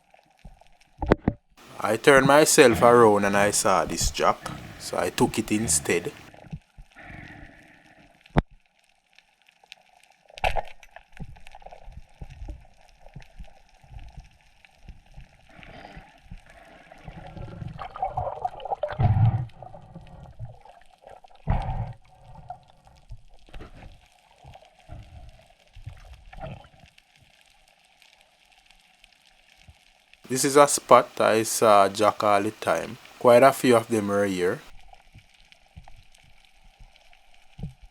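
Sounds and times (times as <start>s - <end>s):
faint steady hum: 1.6s - 8.6s, 30.2s - 37.6s
water gurgling and sloshing: 4.1s - 4.9s, 10.4s - 27.0s.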